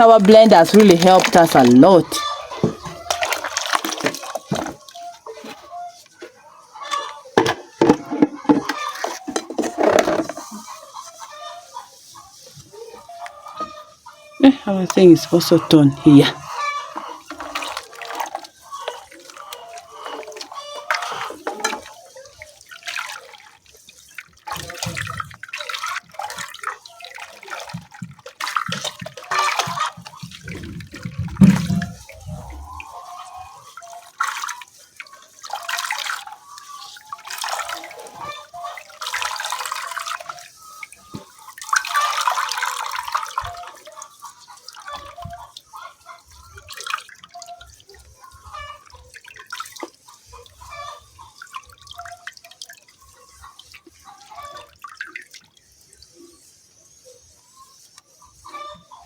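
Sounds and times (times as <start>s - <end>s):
liquid pouring and sloshing: 0.0s - 58.8s.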